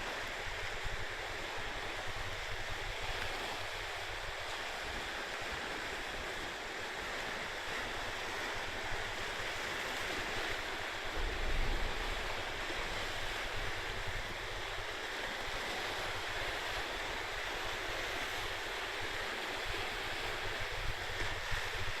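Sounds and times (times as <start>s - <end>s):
wind and sea rushing: 0.0s - 22.0s
wind rumbling on microphone: 8.2s - 22.0s.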